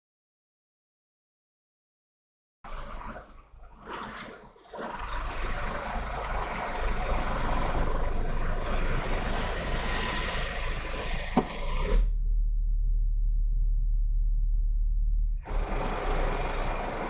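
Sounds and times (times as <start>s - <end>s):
low engine rumble: 5.6s - 17.0s.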